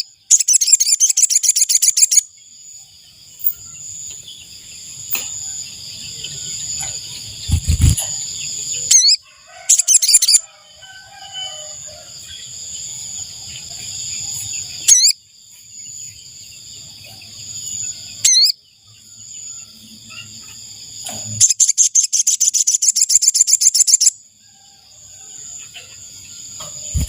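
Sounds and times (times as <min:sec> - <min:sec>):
bird high looping calls: 0:00.0 - 0:02.6, 0:03.2 - 0:10.4, 0:12.2 - 0:15.3, 0:17.5 - 0:18.6, 0:21.4 - 0:24.2
high-pitched insect drone: 0:04.9 - 0:15.2
burst of bird chirps: 0:06.8 - 0:10.4.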